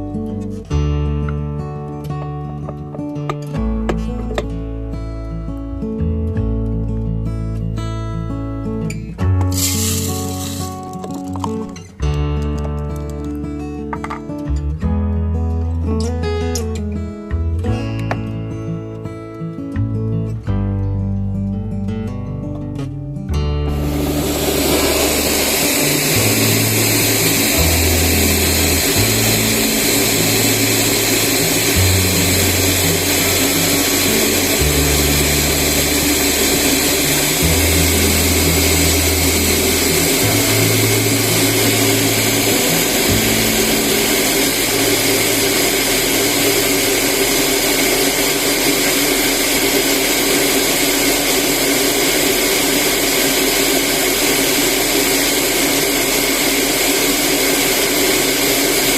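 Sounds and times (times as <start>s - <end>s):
rice polishing machine running: 9.5s - 11.4s, 23.7s - 58.9s.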